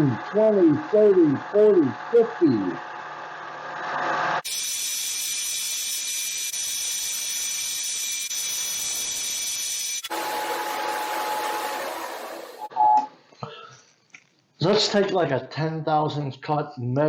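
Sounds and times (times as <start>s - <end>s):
lathe running with high whine: 10.0s - 12.7s.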